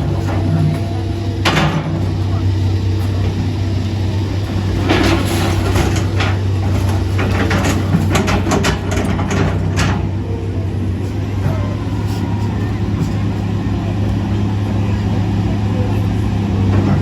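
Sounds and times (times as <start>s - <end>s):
heavy engine humming: 0.0s - 17.0s
knocks and clatter: 4.5s - 10.2s.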